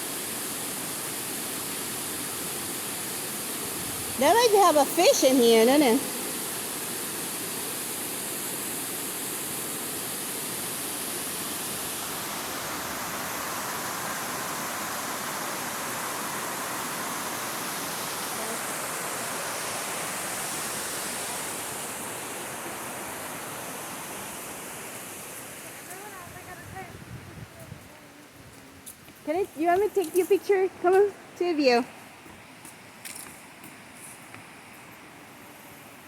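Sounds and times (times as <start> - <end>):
river water rushing over a drop: 0.0 - 27.4.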